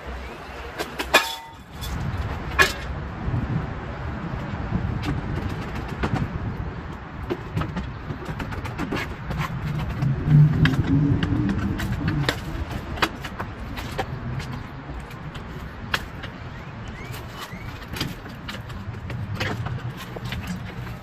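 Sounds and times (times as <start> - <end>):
low vehicle engine hum: 0.0 - 21.0
road traffic rumbling: 0.0 - 21.0
sharp clicks and knocks: 5.0 - 21.0.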